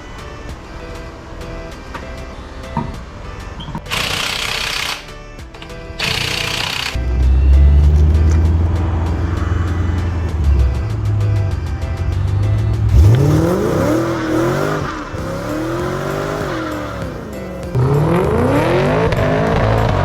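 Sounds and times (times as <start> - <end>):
car engine accelerating hard: 6.2 - 20.0.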